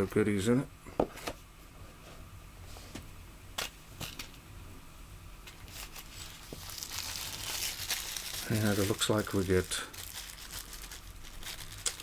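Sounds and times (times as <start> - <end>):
packaging rustling: 5.5 - 12.0.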